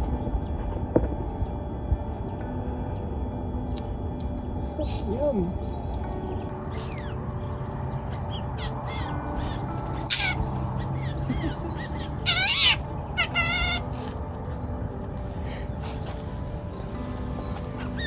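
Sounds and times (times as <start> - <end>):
birds chirping and whistling: 4.8 - 14.8, 17.0 - 18.0
harsh rasping bird calls: 6.6 - 14.2, 17.4 - 18.0
wavering bird call: 8.1 - 14.1.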